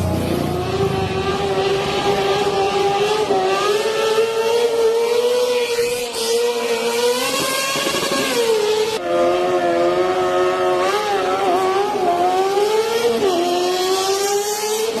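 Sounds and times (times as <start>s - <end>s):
motorcycle engine high revs whine: 0.0s - 15.0s.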